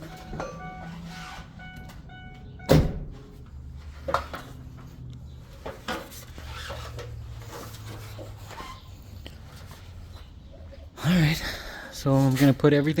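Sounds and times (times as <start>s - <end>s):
electronic warning chime: 0.0s - 3.0s
engine humming: 0.0s - 11.1s
loud thump: 2.6s - 3.2s.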